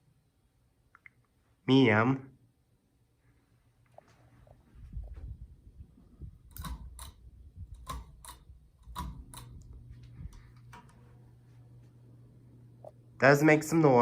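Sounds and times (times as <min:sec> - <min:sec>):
ceiling fan motor hum: 0:03.2 - 0:14.0
sharp irregular clicks and ticks: 0:06.4 - 0:10.8.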